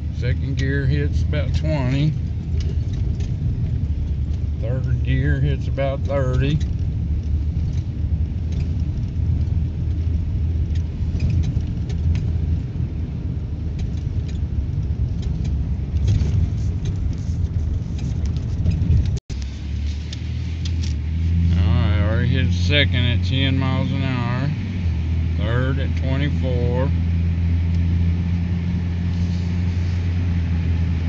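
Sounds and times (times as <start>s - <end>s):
engine and road rumble: 0.0s - 31.0s
light rattles: 0.2s - 21.1s.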